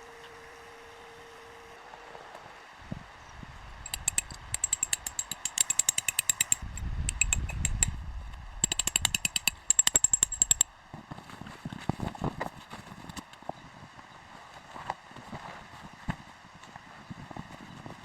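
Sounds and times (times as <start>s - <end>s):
rapid sharp ringing clicks: 3.9s - 8.0s, 8.6s - 10.8s
low rumble: 6.6s - 10.8s.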